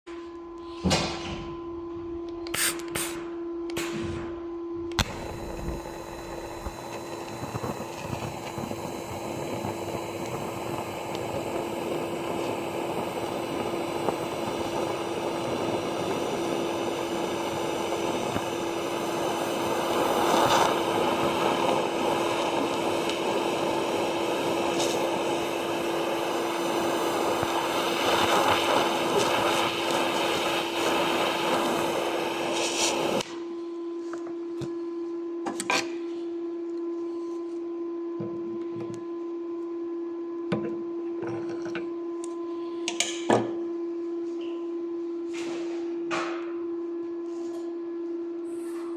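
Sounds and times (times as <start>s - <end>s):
steady hum: 0.1s - 48.9s
welding arc hiss: 2.4s - 4.0s, 5.0s - 33.3s.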